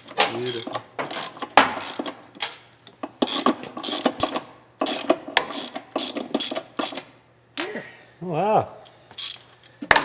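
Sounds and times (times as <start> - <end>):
ratchet wrench clicking: 0.4 - 2.5, 3.2 - 7.1, 9.2 - 9.5.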